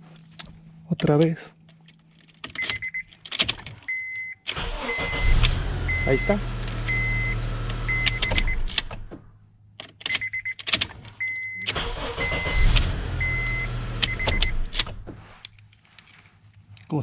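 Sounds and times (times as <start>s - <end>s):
ignition key clicks: 2.2s - 15.6s
car engine running: 4.5s - 9.5s, 10.9s - 15.4s
car engine starting: 4.5s - 9.5s, 10.8s - 15.5s
dashboard chime beeping: 5.9s - 8.7s, 13.2s - 14.6s.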